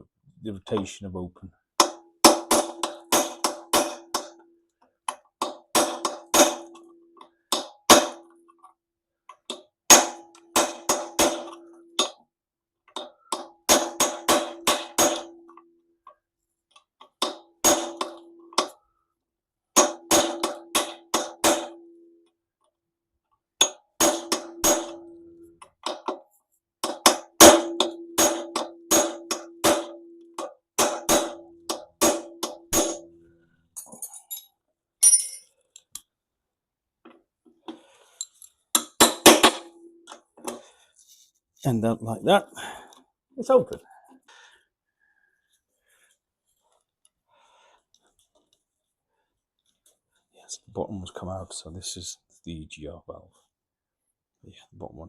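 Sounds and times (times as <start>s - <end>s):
metal ringing: 35.0s - 35.5s.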